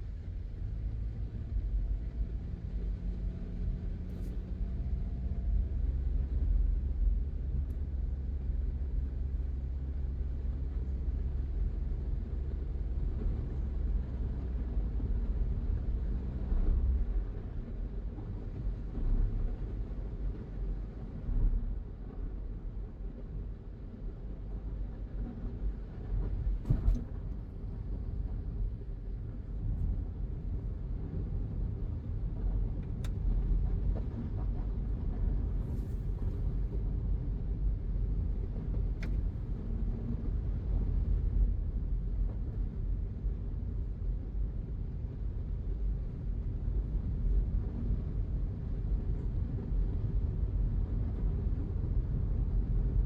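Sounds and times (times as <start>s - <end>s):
car engine and tyres rumbling: 0.0s - 53.0s.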